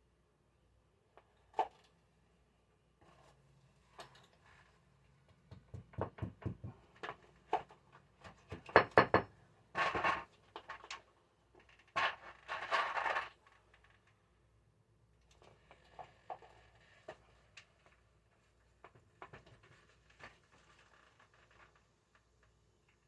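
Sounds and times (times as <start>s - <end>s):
tools knocking and clattering: 5.4s - 7.2s.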